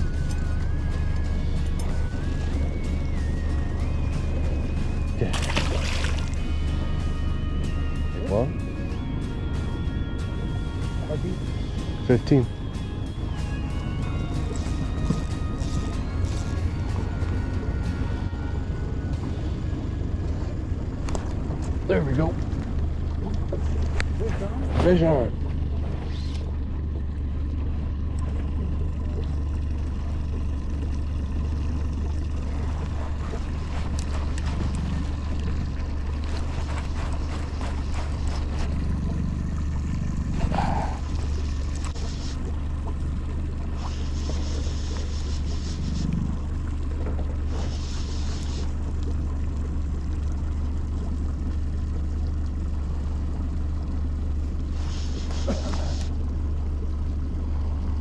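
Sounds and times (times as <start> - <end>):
outboard motor running: 0.0 - 58.0
brief hisses: 43.8 - 46.1, 47.5 - 48.8, 54.8 - 56.1.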